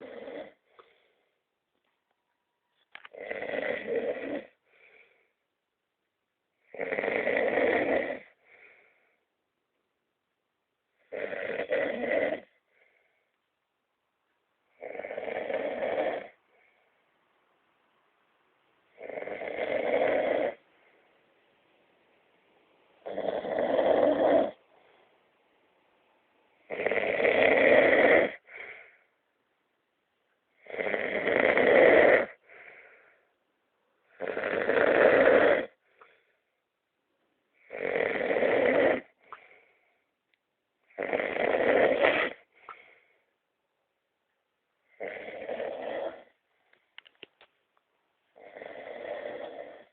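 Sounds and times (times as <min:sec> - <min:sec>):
man snoring: 0:00.0 - 0:00.6, 0:03.1 - 0:04.6, 0:06.6 - 0:08.4, 0:11.1 - 0:12.6, 0:14.8 - 0:16.4, 0:19.0 - 0:20.6, 0:23.0 - 0:24.6, 0:26.7 - 0:28.6, 0:30.6 - 0:32.4, 0:34.2 - 0:35.8, 0:37.6 - 0:39.2, 0:40.9 - 0:42.5, 0:45.0 - 0:46.4, 0:48.4 - 0:49.9.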